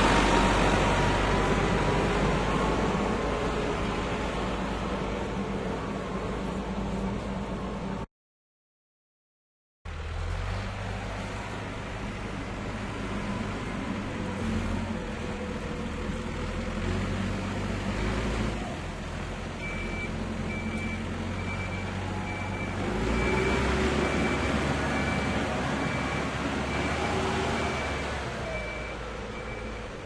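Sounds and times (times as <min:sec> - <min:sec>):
tractor engine rumbling: 0:00.0 - 0:08.1, 0:09.9 - 0:30.0
reversing alarm beeping: 0:19.6 - 0:29.9.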